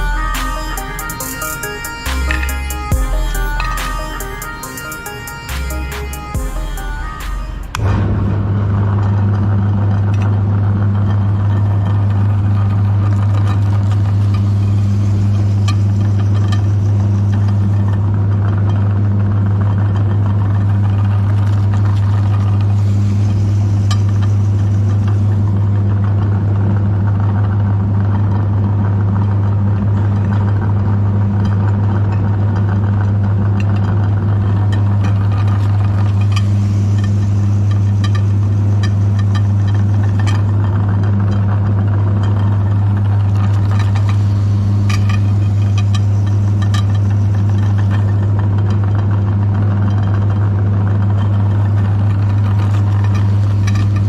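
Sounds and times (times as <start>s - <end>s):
cookies crackling in grinder: 10.4s - 54.0s
meat grinder motor humming: 10.6s - 54.0s.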